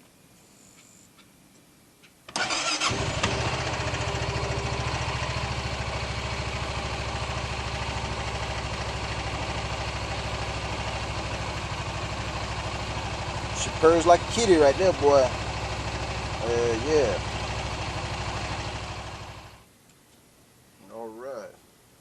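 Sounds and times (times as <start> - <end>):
engine starting and idling: 2.3 - 19.6.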